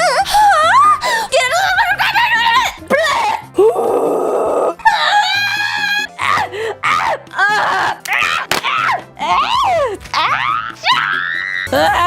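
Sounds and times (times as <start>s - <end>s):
background music: 0.0s - 12.0s
woman making strange vocal noises: 3.2s - 5.2s.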